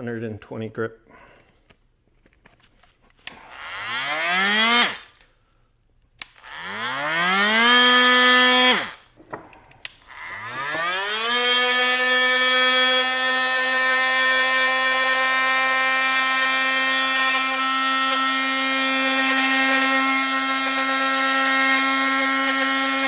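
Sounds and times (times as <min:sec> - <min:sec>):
oscillating multi-tool buzzing: 0:03.3 - 0:05.2, 0:06.2 - 0:09.1, 0:09.9 - 0:23.0.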